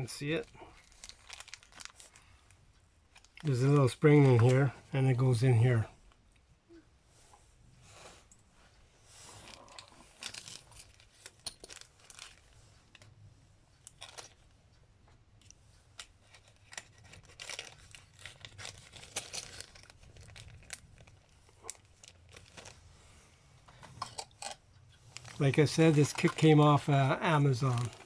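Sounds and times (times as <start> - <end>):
packaging crinkling: 0.3 - 2.2, 9.5 - 13.1, 16.0 - 22.8, 25.1 - 28.0.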